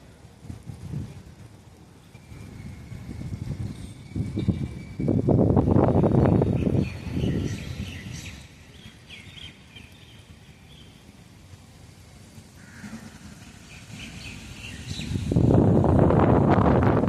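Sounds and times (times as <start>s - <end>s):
wind buffeting microphone: 0.0s - 17.0s
birds chirping: 4.0s - 11.1s, 12.6s - 15.5s.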